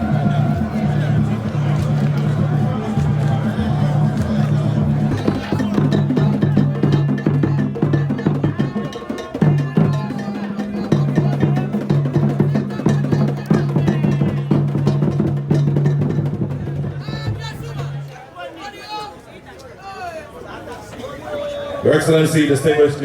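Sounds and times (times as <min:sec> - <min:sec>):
dense drums and percussion: 0:00.0 - 0:18.1.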